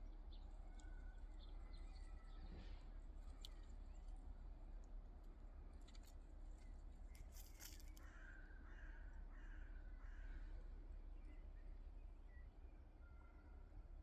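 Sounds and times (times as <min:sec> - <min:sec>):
low outdoor rumble: 0:00.0 - 0:14.0
faint bird calls: 0:07.9 - 0:11.4.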